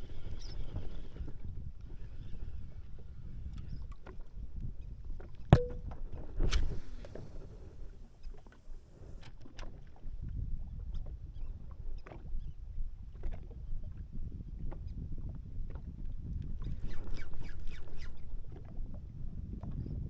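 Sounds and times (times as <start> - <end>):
sharp knock with short ring: 5.6 - 5.8, 6.5 - 8.9.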